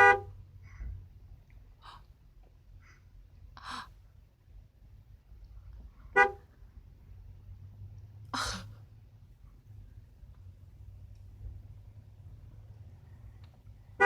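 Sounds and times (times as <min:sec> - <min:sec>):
car horn toot: 0:00.0 - 0:00.4, 0:06.1 - 0:06.5.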